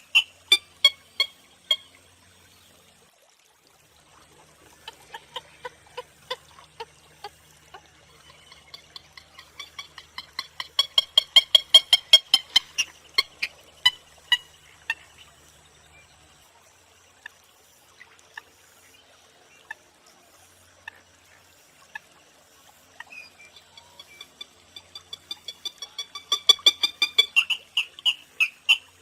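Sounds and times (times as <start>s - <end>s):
bird sharp clucking calls: 4.6s - 15.3s, 23.0s - 29.0s.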